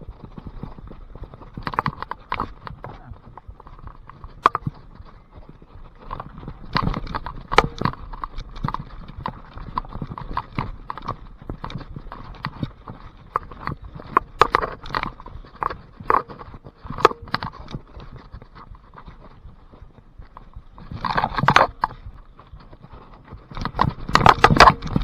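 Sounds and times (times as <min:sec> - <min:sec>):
mountain bike rattling on trail: 0:00.0 - 0:25.0.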